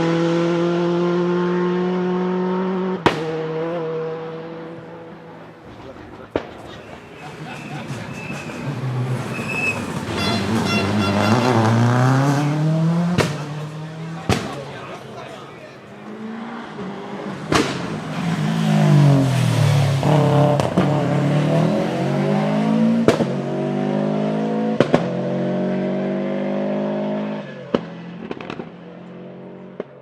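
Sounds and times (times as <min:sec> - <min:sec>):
rally car engine at high revs: 0:00.0 - 0:05.6, 0:07.5 - 0:14.8, 0:15.9 - 0:29.9
sharp cracks: 0:27.7 - 0:28.8.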